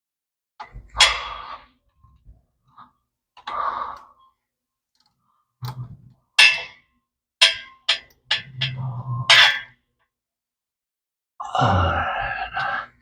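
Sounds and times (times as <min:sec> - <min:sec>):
metal tools clicking and knocking: 0:06.4 - 0:06.8, 0:07.4 - 0:09.6.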